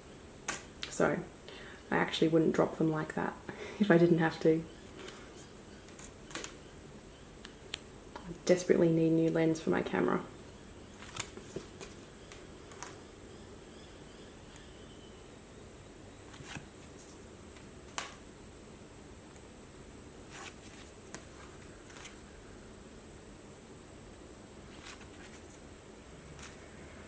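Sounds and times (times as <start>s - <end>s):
faint hiss with high whine: 0.0s - 27.0s
cards dropped onto pile: 5.9s - 6.6s, 17.9s - 18.2s.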